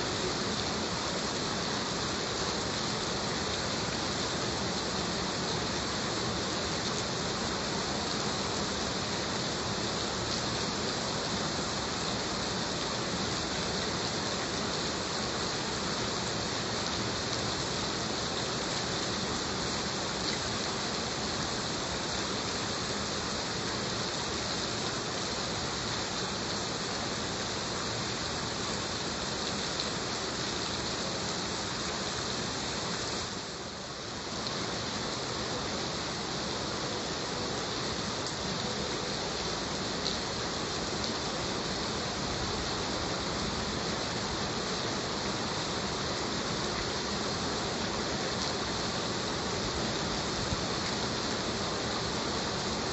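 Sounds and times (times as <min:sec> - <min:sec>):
heavy rain: 0:00.0 - 0:52.9.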